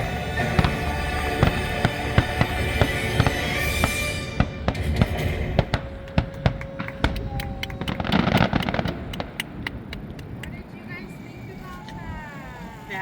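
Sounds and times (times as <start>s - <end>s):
music: 0.0s - 6.9s
fireworks popping and crackling: 0.0s - 12.2s.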